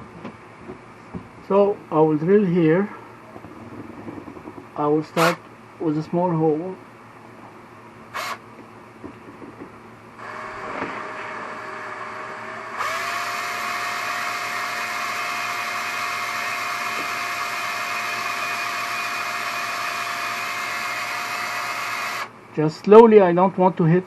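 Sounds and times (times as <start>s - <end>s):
electric drill whining: 8.2s - 8.4s, 10.2s - 22.3s.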